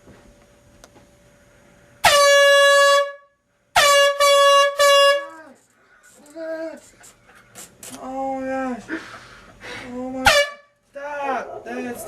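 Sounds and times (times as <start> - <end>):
air horn blasts: 2.0 - 5.5, 10.2 - 10.8.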